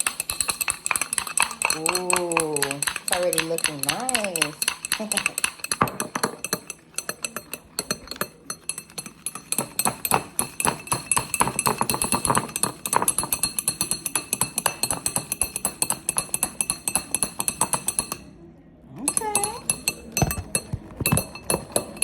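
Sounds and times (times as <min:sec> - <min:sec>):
metal strainer clinking in cup: 0:00.0 - 0:18.3, 0:19.1 - 0:22.0
cup ringing: 0:00.0 - 0:18.4, 0:19.0 - 0:22.0.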